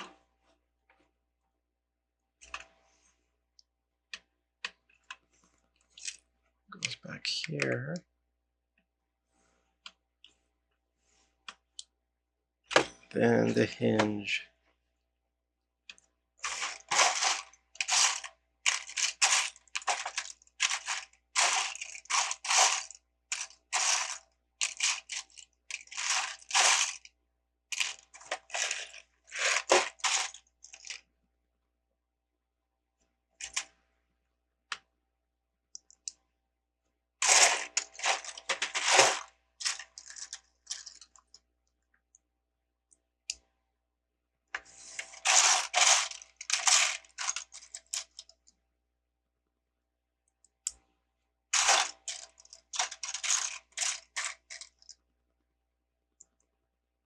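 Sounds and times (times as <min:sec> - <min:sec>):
plastic pieces clattering: 0:16.4 - 0:27.1, 0:27.7 - 0:31.0, 0:37.2 - 0:41.4, 0:44.9 - 0:48.4, 0:51.6 - 0:55.0.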